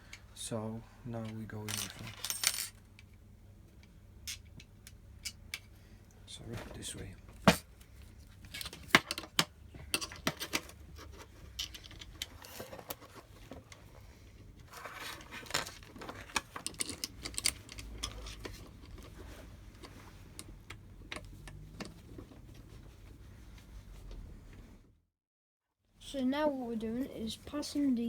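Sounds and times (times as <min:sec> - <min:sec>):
metal and plastic parts clicking: 0:15.3 - 0:22.0.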